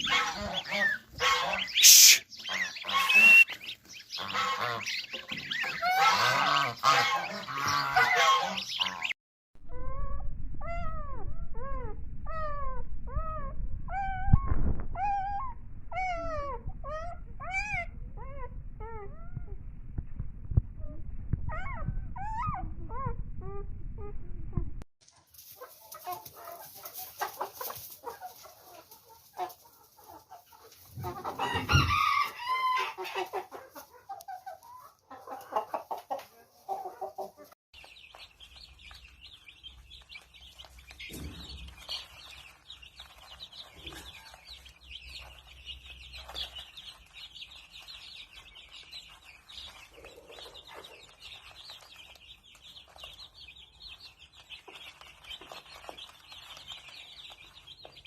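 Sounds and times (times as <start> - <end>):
chickens clucking: 0.0 - 9.2, 25.1 - 58.0
rooster crowing: 31.4 - 33.0.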